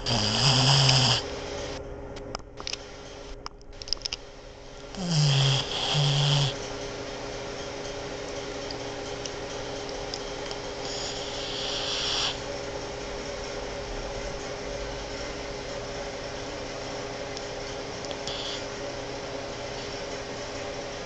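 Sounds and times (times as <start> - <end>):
dog snoring: 0.0 - 1.3, 4.9 - 6.6, 10.8 - 12.5, 18.3 - 18.7
dog hissing breath: 10.8 - 12.4.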